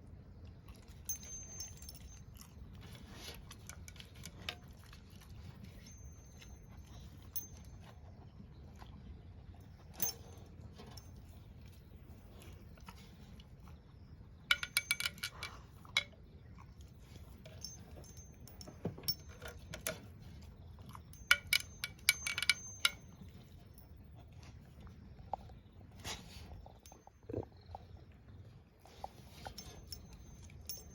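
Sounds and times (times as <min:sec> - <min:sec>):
small ringing tones: 0:01.0 - 0:02.5, 0:14.5 - 0:16.1, 0:17.0 - 0:20.4, 0:21.0 - 0:24.2, 0:29.3 - 0:30.9
metallic jingling and clinking: 0:01.0 - 0:04.7, 0:05.4 - 0:08.0, 0:09.6 - 0:11.5, 0:14.4 - 0:16.2, 0:16.9 - 0:24.2, 0:28.9 - 0:30.9.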